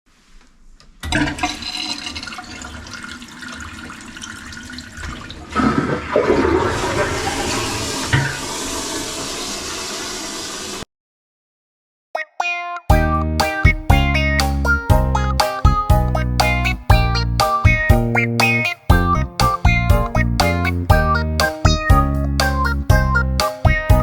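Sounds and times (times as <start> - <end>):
toilet flushing: 1.0 - 10.9.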